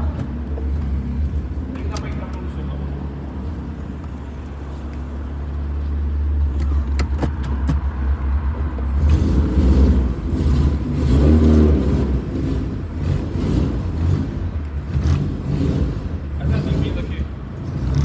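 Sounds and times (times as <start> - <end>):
car engine revving: 6.4 - 18.0.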